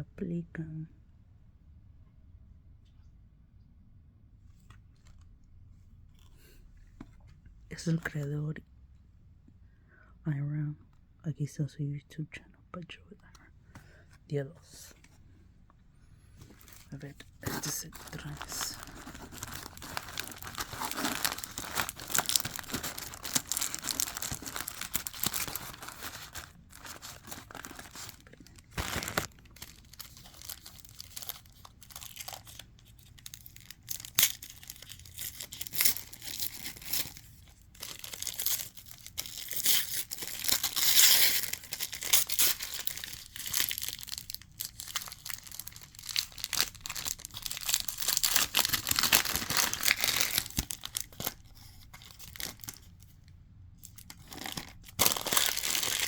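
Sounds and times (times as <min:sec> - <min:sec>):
wrapping paper crinkling and tearing: 0:16.5 - 0:53.2, 0:53.8 - 0:56.0.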